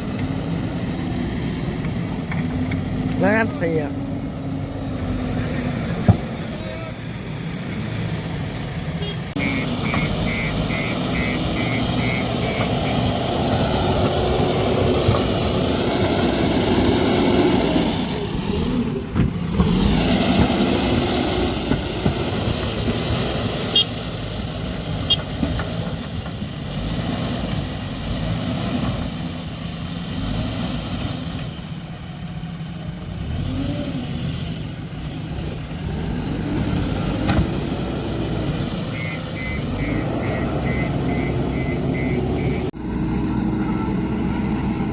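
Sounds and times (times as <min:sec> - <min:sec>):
diesel engine running: 0:00.0 - 0:44.9
short beeps: 0:09.4 - 0:13.0, 0:38.9 - 0:42.7.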